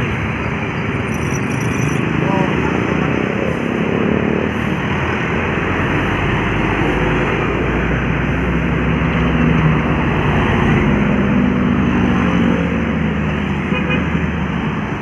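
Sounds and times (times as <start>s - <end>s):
bus diesel engine rumbling: 0.0s - 15.0s
road traffic noise: 0.0s - 15.0s.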